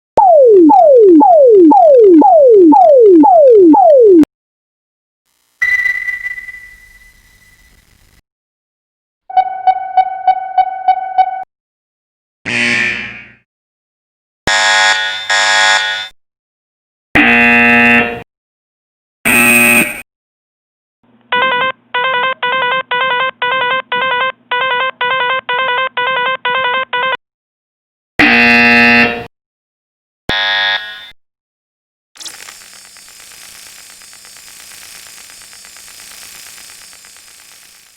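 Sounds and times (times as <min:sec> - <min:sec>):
rapid beeping: 0:00.2 - 0:04.2
falling electronic tone: 0:00.2 - 0:04.3, 0:05.6 - 0:08.0
pulsing alarm tone: 0:00.2 - 0:04.3, 0:05.6 - 0:07.8
harsh buzzer: 0:05.3 - 0:08.2, 0:12.4 - 0:13.4, 0:14.5 - 0:16.1, 0:17.2 - 0:18.2, 0:19.3 - 0:20.0, 0:28.2 - 0:29.3, 0:30.3 - 0:31.2.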